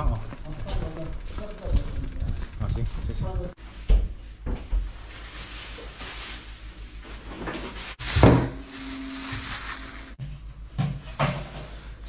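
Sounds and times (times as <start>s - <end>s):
low hum: 8.0s - 10.5s.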